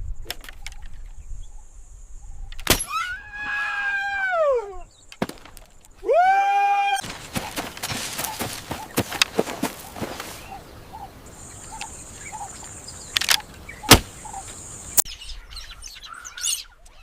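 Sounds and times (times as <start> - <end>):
long high-pitched cries: 2.8 - 4.9
noisy crackling with clicks: 12.6 - 14.6
sharp chop-like crack: 13.2 - 14.3.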